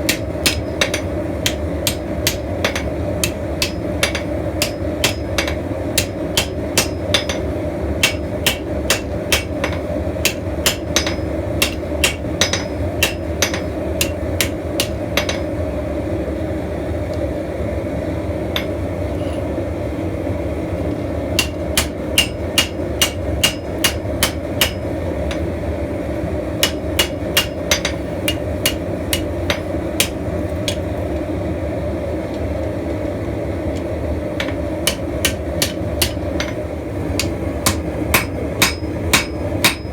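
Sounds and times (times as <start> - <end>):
hammer striking steel on anvil: 0.0 - 15.6, 18.6 - 19.4, 21.4 - 25.6, 26.6 - 30.9, 34.4 - 39.9.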